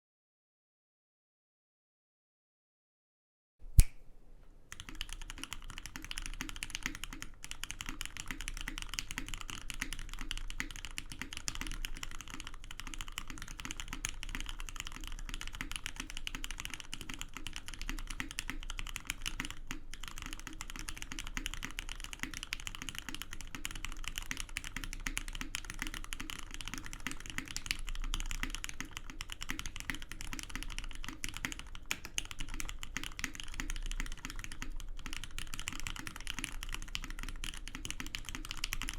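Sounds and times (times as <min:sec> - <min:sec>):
fast mechanical keyboard typing: 0:04.7 - 0:38.9.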